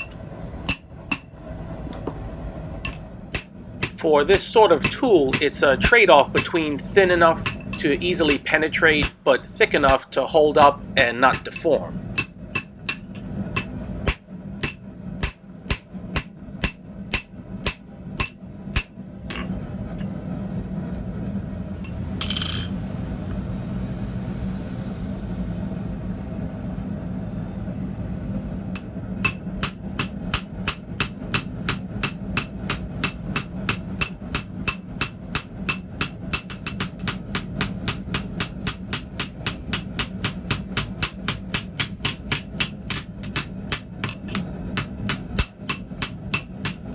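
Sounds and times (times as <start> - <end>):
hammer striking steel on anvil: 0.0 - 1.3, 2.8 - 19.5, 28.8 - 46.9
steady low hum: 0.0 - 46.9.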